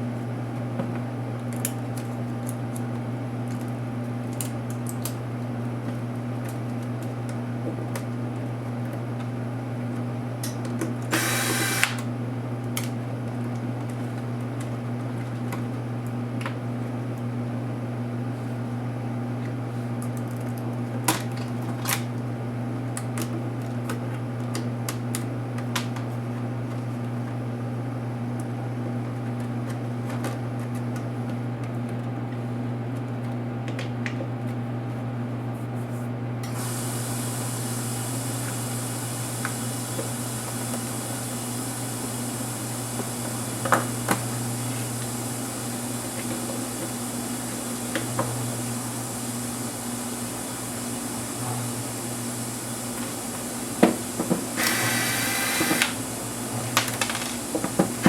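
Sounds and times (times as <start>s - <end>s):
high hiss: 54.6s - 56.0s.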